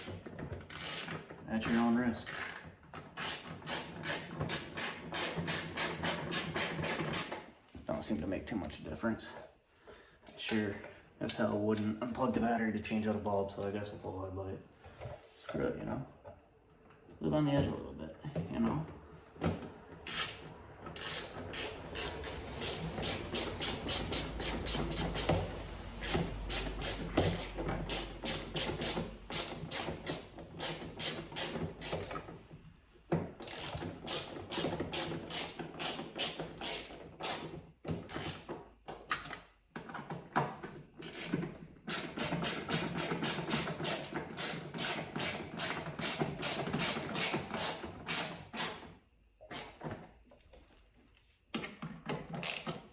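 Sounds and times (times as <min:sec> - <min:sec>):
ratchet wrench clicking: 0:00.7 - 0:02.6, 0:03.2 - 0:07.2, 0:20.1 - 0:20.4, 0:21.0 - 0:32.2, 0:33.4 - 0:37.5, 0:38.1 - 0:38.5, 0:41.0 - 0:48.8, 0:52.4 - 0:52.7.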